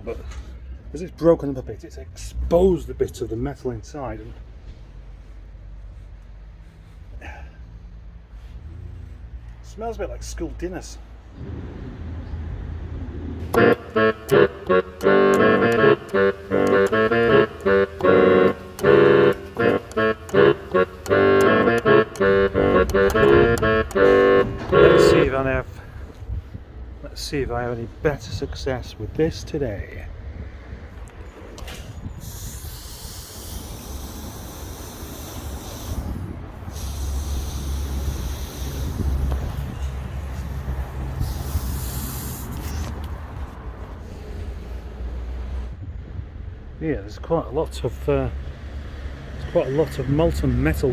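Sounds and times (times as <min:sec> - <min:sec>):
keyboard music chords: 0:13.4 - 0:25.4.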